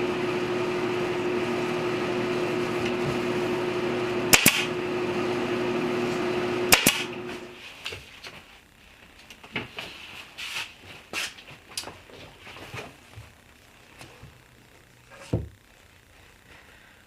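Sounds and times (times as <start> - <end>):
machine hum: 0.0 - 7.8
pneumatic fastener gun snapping: 4.3 - 4.7, 6.7 - 7.1.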